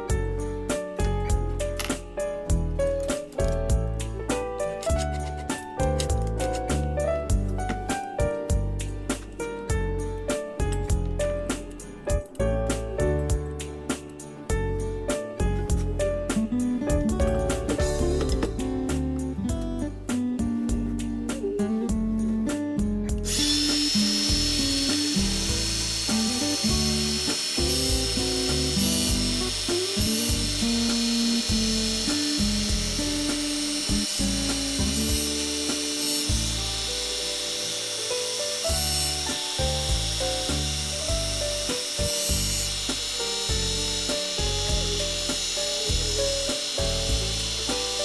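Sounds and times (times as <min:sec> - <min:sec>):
plucked guitar music: 0:00.0 - 0:48.0
angle grinder whining: 0:23.2 - 0:48.0.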